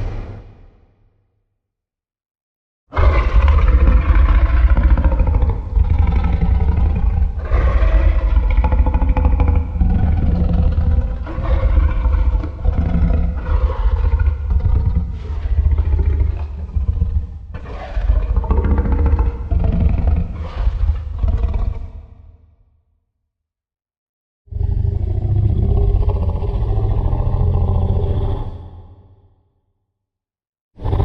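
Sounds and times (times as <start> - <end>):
monster roars: 2.9 - 22.3, 30.8 - 31.0.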